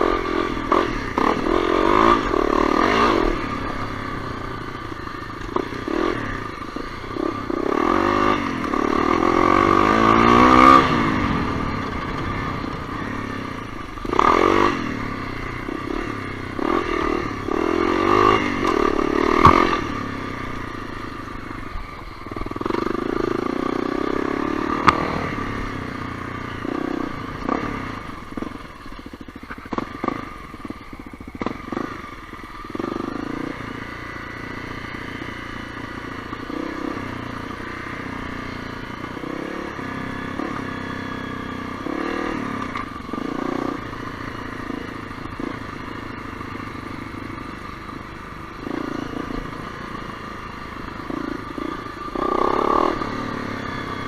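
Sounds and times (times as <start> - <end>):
motorcycle engine revving: 0.0 - 54.0
bike knocks and rattles: 18.6 - 19.8.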